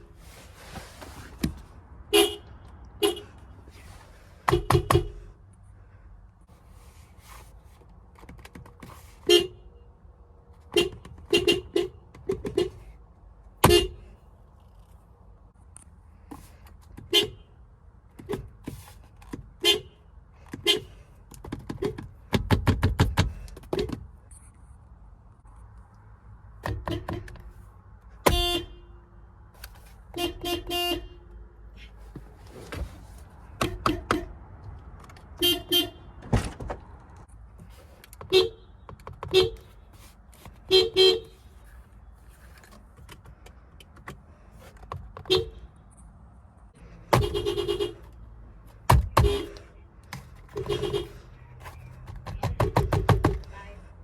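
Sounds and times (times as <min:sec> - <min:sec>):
car horn honking in short taps: 0:28.2 - 0:28.8, 0:47.1 - 0:48.0, 0:48.9 - 0:49.6, 0:50.5 - 0:51.2.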